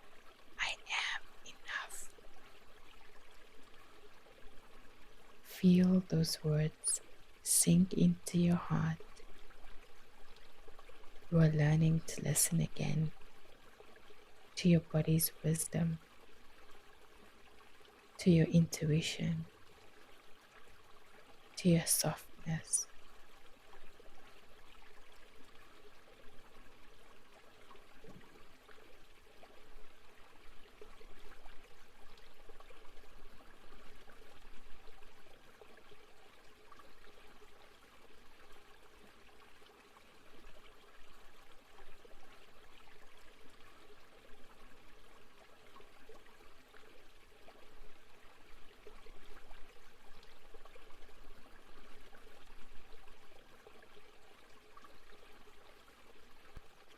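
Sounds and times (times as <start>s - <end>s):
waterfall flowing and trickling: 0.0s - 56.9s.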